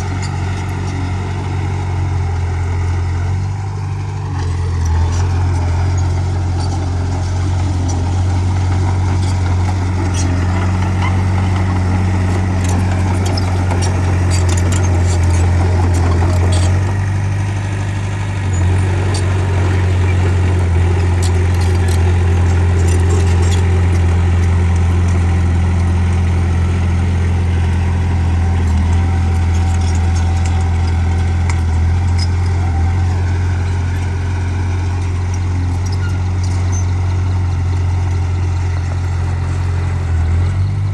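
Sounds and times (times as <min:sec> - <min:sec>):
bulldozer diesel engine hum: 0:00.0 - 0:40.9
sharp clicks and clanks: 0:07.4 - 0:33.1.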